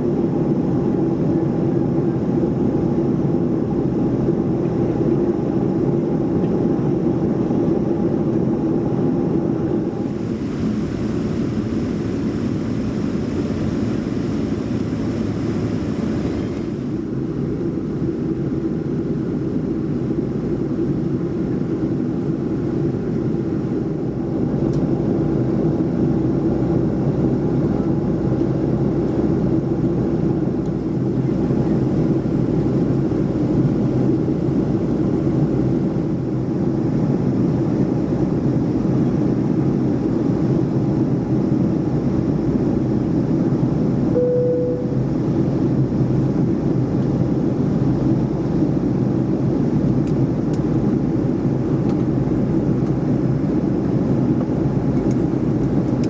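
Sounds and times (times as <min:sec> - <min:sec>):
airplane cabin drone: 0:00.0 - 0:56.0
airflow hiss: 0:09.9 - 0:17.1.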